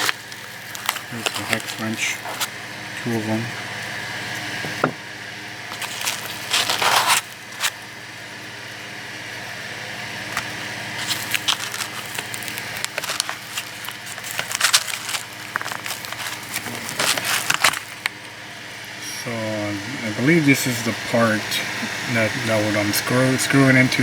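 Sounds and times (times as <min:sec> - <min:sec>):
plastic packaging crinkling: 0:00.0 - 0:02.6, 0:05.7 - 0:07.8, 0:10.3 - 0:18.4.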